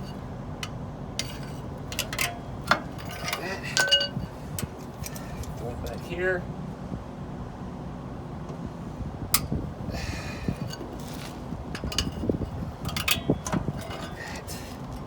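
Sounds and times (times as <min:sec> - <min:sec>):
metallic clicks and knocks: 0:00.0 - 0:05.6, 0:11.8 - 0:14.2
steady low hum: 0:00.0 - 0:15.0
metal scrape: 0:01.2 - 0:05.6, 0:10.5 - 0:15.0.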